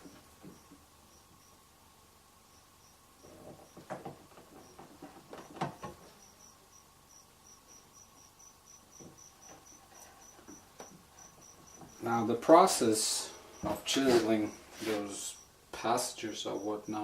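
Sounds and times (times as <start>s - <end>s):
cricket chirping: 0.0s - 1.8s, 2.4s - 17.0s
faint knocks and scrapes: 3.2s - 6.3s, 13.2s - 15.4s.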